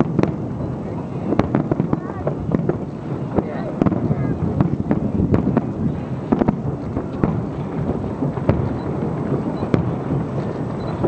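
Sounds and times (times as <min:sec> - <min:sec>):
fireworks booming: 0:00.0 - 0:11.0.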